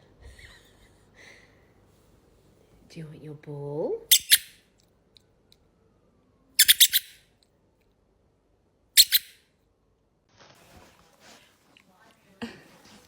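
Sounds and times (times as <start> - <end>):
squeaky toy ball squeaking: 4.1 - 4.6, 6.6 - 7.2, 9.0 - 9.4.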